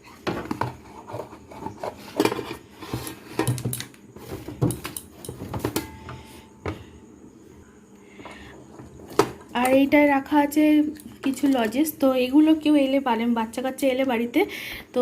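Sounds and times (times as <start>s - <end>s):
food containers clicking and tapping: 0.3s - 6.8s, 10.8s - 12.0s.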